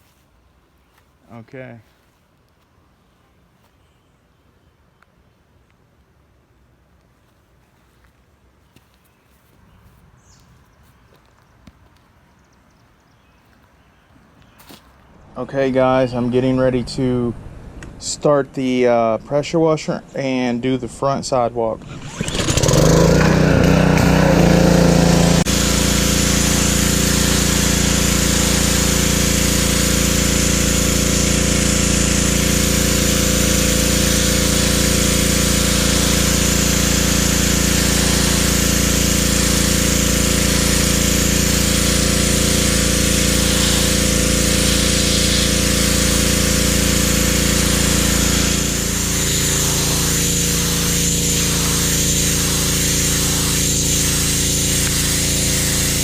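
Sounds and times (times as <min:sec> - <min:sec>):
pressure washer engine droning: 0:14.6 - 0:56.0
water spray hissing: 0:23.7 - 0:56.0.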